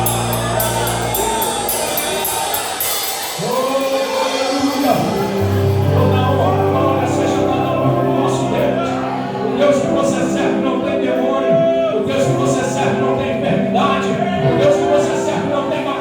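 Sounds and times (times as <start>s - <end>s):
bass guitar: 0.0s - 2.8s, 5.0s - 9.7s
drums: 0.0s - 7.2s
cymbal washes: 0.0s - 8.8s
voices singing held notes: 0.0s - 16.0s.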